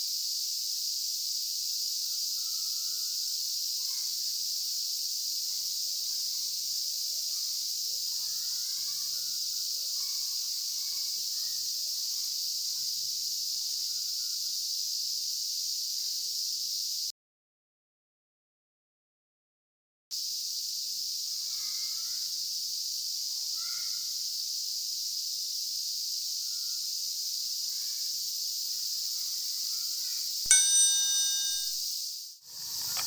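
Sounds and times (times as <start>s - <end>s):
crickets and insects chirping: 0.0s - 17.1s, 20.2s - 31.0s.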